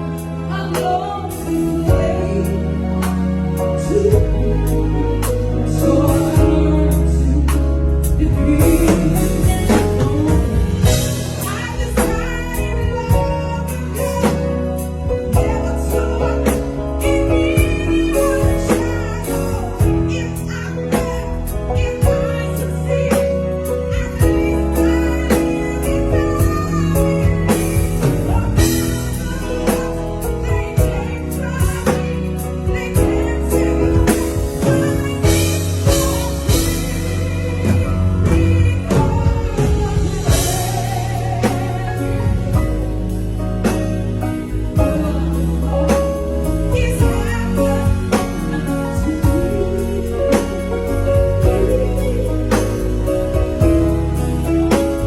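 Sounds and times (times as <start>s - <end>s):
live band playing: 0.0s - 55.0s
woman singing a ballad: 0.0s - 55.0s.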